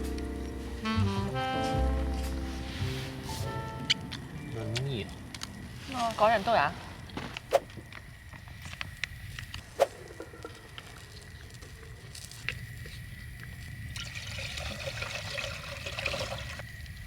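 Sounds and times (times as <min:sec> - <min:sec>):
liquid pouring into pot: 0:13.9 - 0:16.7.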